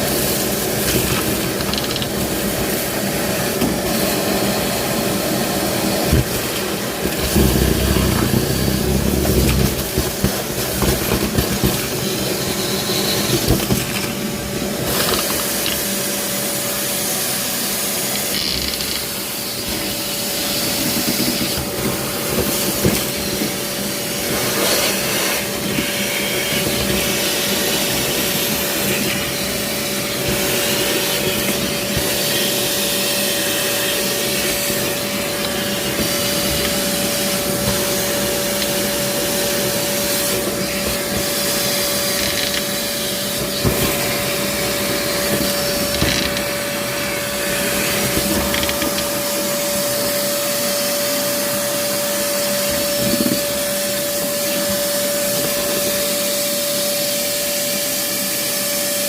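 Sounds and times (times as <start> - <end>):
motorised machine whining: 0.0 - 16.4.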